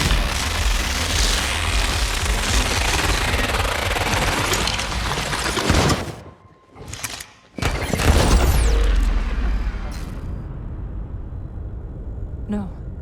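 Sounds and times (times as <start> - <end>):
rapid gunfire: 0.0 - 6.1
deep low rumble: 9.0 - 13.0.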